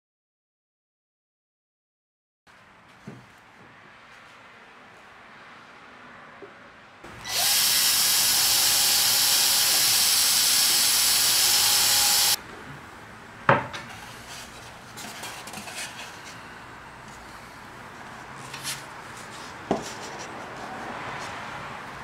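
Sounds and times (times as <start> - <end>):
woodworking power tool running: 7.1 - 12.4.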